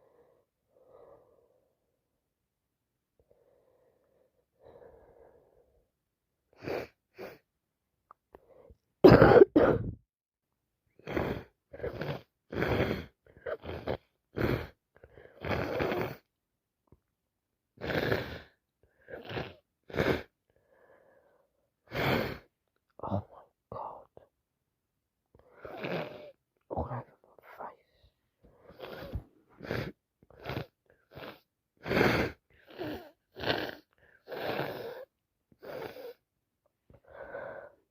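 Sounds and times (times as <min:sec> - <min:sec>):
faint breathing: 0:00.0 - 0:02.0, 0:03.2 - 0:05.9, 0:20.5 - 0:21.6, 0:36.9 - 0:37.9
woman sneezing and coughing: 0:09.0 - 0:10.0.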